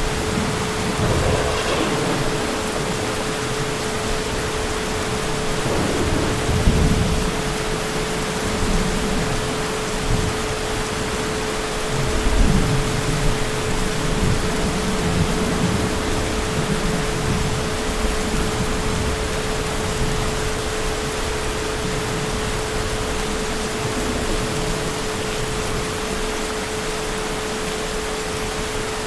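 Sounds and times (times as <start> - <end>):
distant thunder rumbling: 0.0 - 10.6
heavy rain: 0.0 - 29.0.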